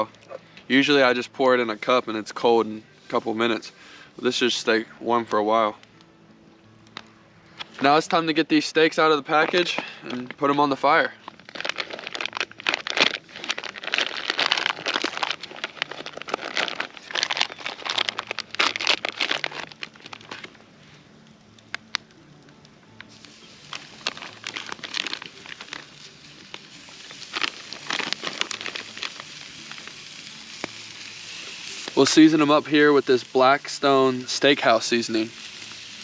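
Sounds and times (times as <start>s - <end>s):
plastic packaging crinkling: 8.9s - 20.6s, 23.1s - 36.0s.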